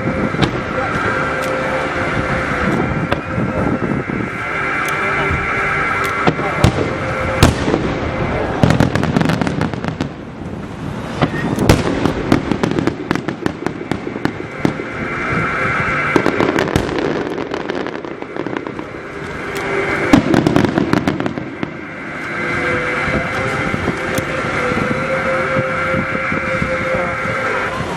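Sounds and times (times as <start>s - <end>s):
fireworks bangs and crackles: 0.0s - 27.9s.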